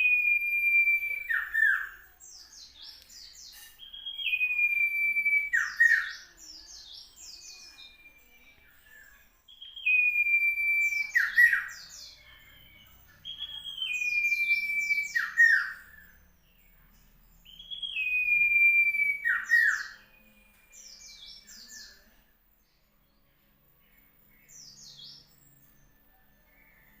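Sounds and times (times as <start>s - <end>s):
bird singing whistled phrase: 0.0s - 2.1s, 3.8s - 16.2s, 17.4s - 22.0s.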